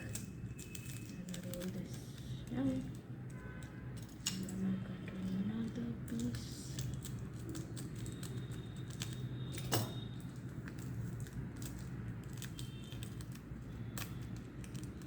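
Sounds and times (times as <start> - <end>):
hands handling tape and scissors: 5.2 - 15.0.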